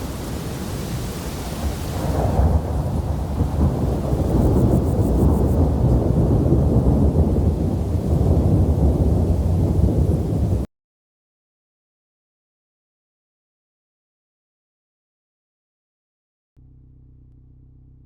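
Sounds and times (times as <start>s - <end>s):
rain hiss: 0.0s - 10.7s
rolling thunder: 0.0s - 10.7s.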